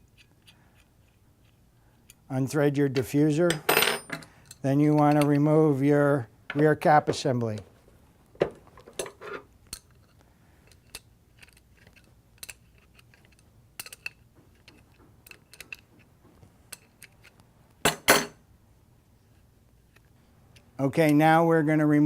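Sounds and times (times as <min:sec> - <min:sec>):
metal spray gun parts clicking: 0:10.7 - 0:15.9.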